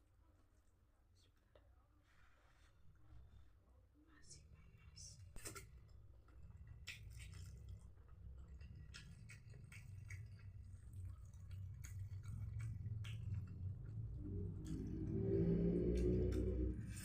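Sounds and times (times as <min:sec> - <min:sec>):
low steady hum: 0:00.0 - 0:17.0
wet chewing sounds: 0:05.4 - 0:17.0.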